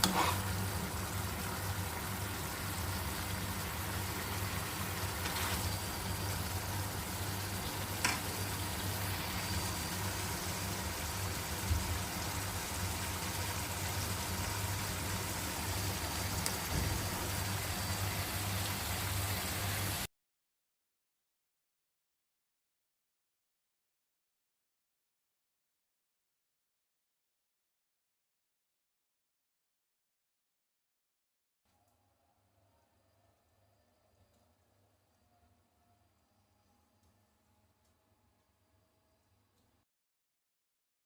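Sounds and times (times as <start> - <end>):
curry sizzling in a pan: 0.0 - 20.1.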